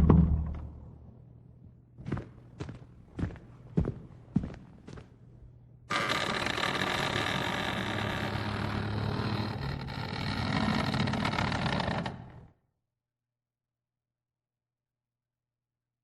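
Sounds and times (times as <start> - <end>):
footsteps: 2.0 - 5.3.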